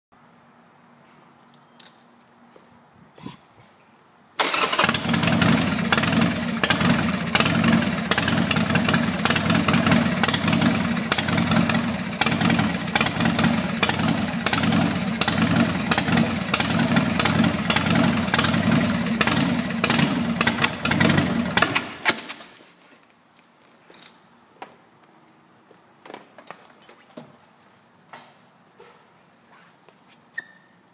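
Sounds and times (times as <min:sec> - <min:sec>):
motorcycle engine cranking: 0:04.4 - 0:22.6.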